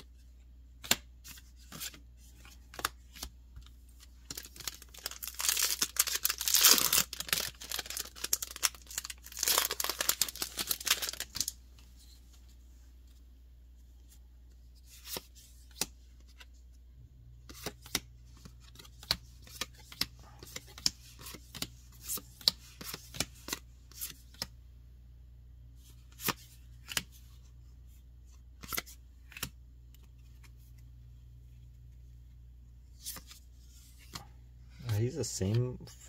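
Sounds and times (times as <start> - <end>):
low steady hum: 0.0 - 36.0.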